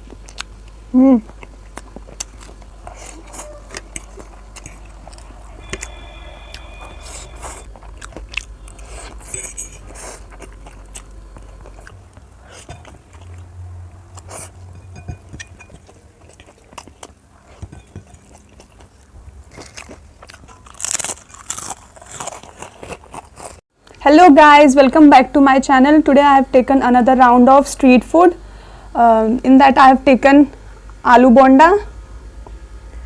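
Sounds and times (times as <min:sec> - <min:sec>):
crunchy food being chewed: 0:00.0 - 0:13.5, 0:14.1 - 0:24.0.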